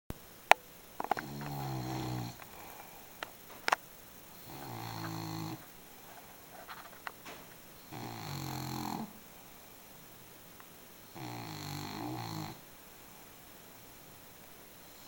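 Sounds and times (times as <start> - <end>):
pet snoring: 1.0 - 3.0, 4.3 - 6.8, 7.8 - 9.2, 11.1 - 12.6.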